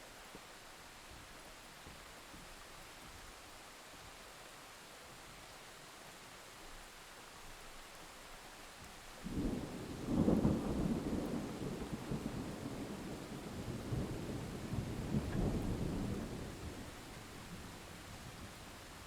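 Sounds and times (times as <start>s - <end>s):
rain hissing: 8.4s - 19.0s
thunder clap rumbling: 9.3s - 17.6s.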